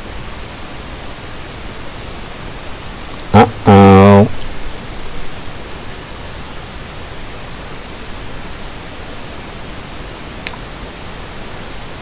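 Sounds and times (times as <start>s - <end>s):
steady hiss: 0.0s - 12.0s
faint click: 10.4s - 10.6s.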